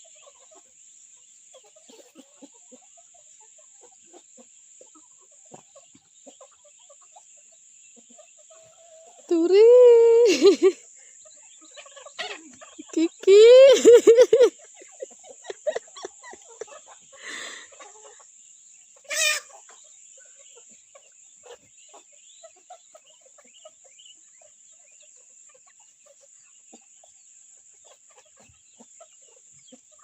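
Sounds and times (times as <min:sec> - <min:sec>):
chickens clucking: 0:00.0 - 0:30.0
chicken squawk: 0:11.6 - 0:18.2, 0:19.0 - 0:19.8.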